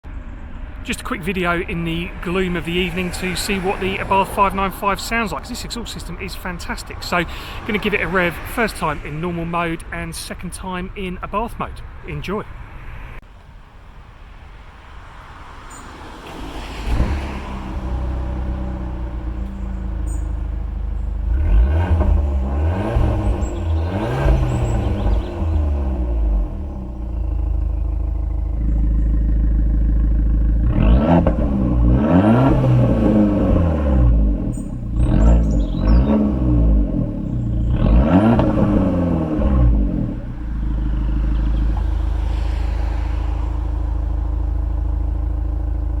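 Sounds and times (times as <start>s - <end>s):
car engine idling: 0.0s - 46.0s
engine free-rev blips: 15.7s - 46.0s.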